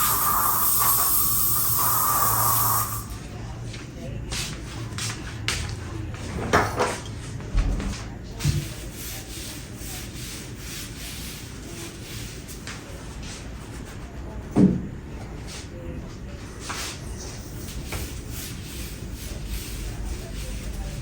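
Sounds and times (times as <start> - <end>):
objects rubbing and shuffling: 16.4 - 21.0.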